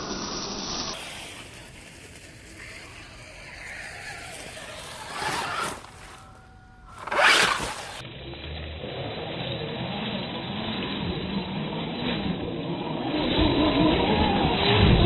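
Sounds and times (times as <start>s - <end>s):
rc car drivetrain and tyres: 0.0s - 15.0s
loud scrape: 1.0s - 8.0s.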